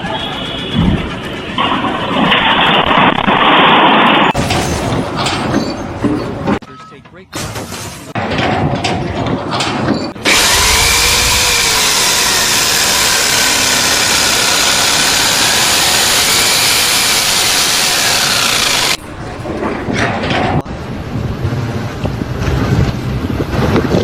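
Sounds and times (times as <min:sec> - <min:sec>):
loud power tool running: 0:10.2 - 0:19.0.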